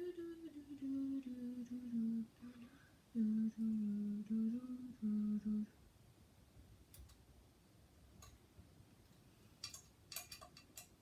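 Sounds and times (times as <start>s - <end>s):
person humming a tune: 0.0s - 5.8s.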